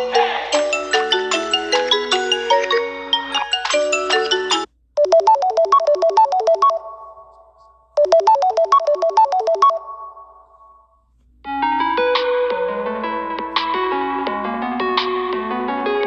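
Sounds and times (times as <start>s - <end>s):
electronic ringtone notes: 0.0s - 7.4s, 8.0s - 10.5s.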